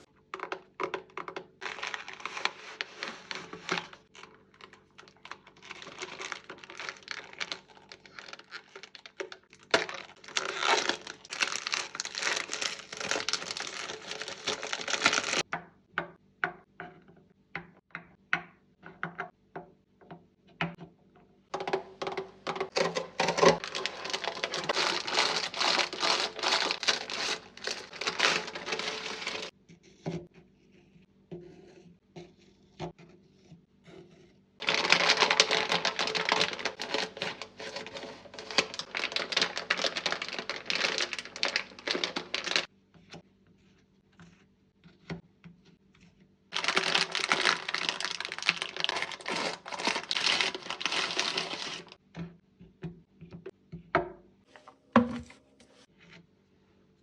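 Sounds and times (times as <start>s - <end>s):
wrappers crinkling: 1.6s - 15.4s, 22.7s - 29.5s, 34.6s - 42.7s, 46.5s - 52.0s.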